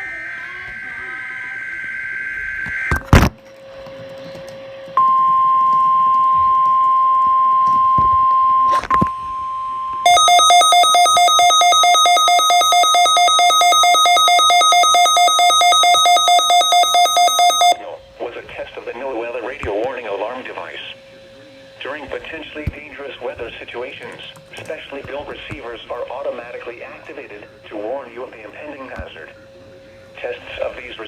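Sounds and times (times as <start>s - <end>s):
steady single warning tone: 5.0s - 17.8s
weather radio alarm beeping rapidly: 9.2s - 17.8s.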